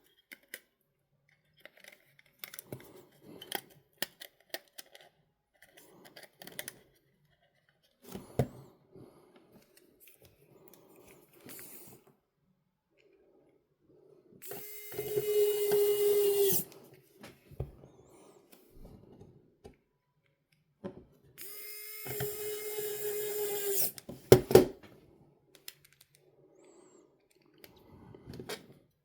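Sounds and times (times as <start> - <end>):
electric screwdriver whirring: 14.4 - 16.8, 21.4 - 24.7.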